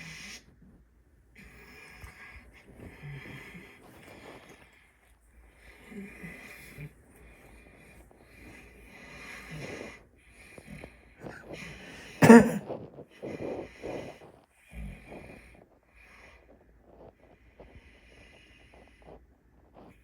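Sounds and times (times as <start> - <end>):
loud snort: 11.2 - 12.7
man snoring: 12.2 - 12.6.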